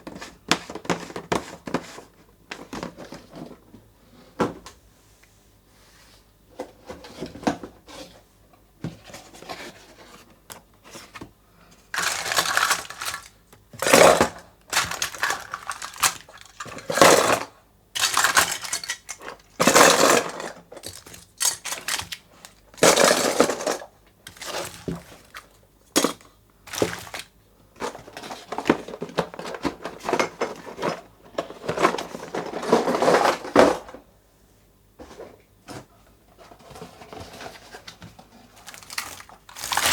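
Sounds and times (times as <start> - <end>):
plastic wrappers crinkling and tearing: 12.0 - 17.4, 18.0 - 23.4, 24.3 - 26.1, 26.7 - 27.3, 38.6 - 39.9
packaged sweets clattering: 12.0 - 33.9, 37.0 - 39.9.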